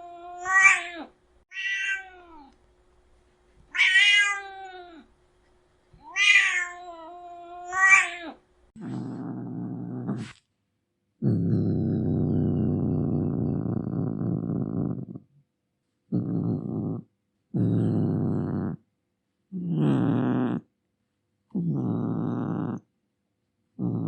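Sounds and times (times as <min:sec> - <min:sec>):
cat yowling: 0:00.0 - 0:02.5, 0:03.7 - 0:05.1, 0:06.0 - 0:08.4
cat growling low: 0:06.1 - 0:10.4, 0:11.2 - 0:15.4, 0:16.1 - 0:18.8, 0:19.5 - 0:20.7, 0:21.5 - 0:22.9, 0:23.8 - 0:24.0.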